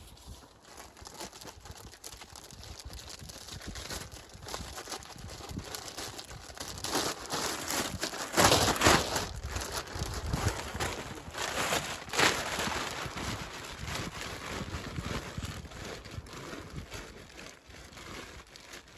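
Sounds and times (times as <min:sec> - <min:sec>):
material crinkling and rustling: 0:00.0 - 0:18.9.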